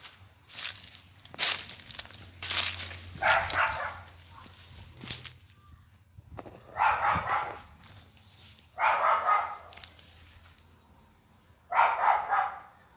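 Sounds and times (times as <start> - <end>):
dog barking: 3.2 - 4.6, 6.7 - 7.8, 8.8 - 9.8, 11.7 - 12.8.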